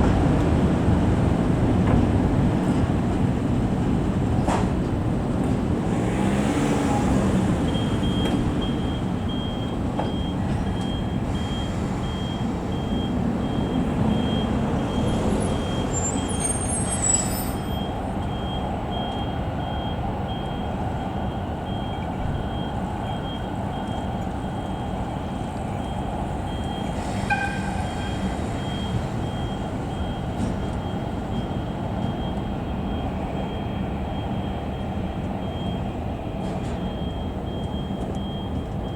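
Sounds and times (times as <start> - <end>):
locomotive engine rumble: 7.0 - 38.9
brief high squeal: 15.9 - 17.9
high pulsing beep: 25.8 - 35.8.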